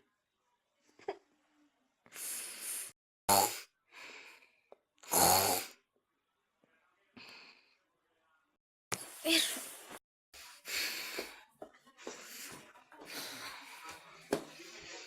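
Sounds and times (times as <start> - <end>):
person snoring: 3.3 - 3.7, 5.1 - 5.8.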